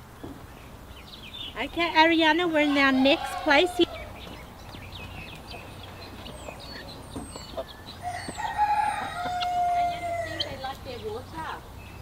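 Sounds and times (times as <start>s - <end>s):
poultry peeping and chirping: 0.0s - 12.0s
rooster crowing: 2.6s - 4.2s, 8.0s - 10.6s.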